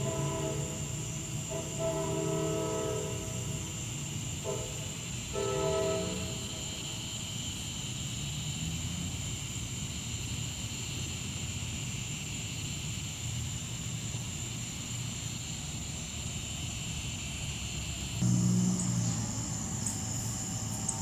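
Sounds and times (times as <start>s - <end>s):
train rumble: 0.0s - 10.6s, 16.8s - 21.0s
insects trilling: 0.0s - 21.0s.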